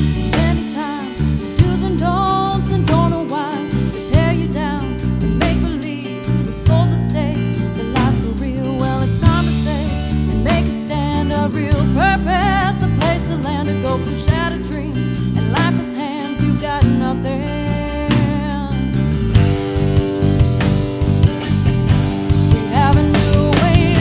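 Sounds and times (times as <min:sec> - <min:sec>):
person singing: 0:00.0 - 0:19.3, 0:22.5 - 0:24.0
strummed guitar: 0:00.0 - 0:24.0
steady beat: 0:19.2 - 0:24.0.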